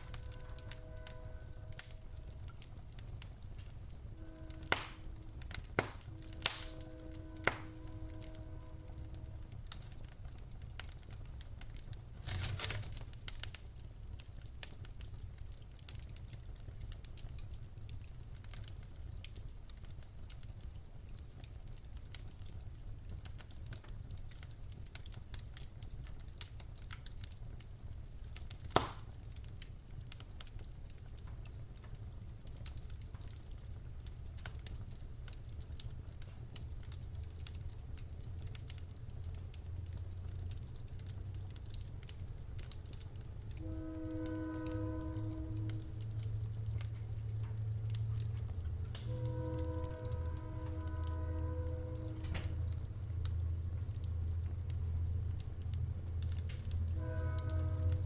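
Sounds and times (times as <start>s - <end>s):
low steady rumble: 0.0s - 58.0s
wood fire crackling: 0.0s - 58.0s
sharp loud pop: 28.8s - 29.0s.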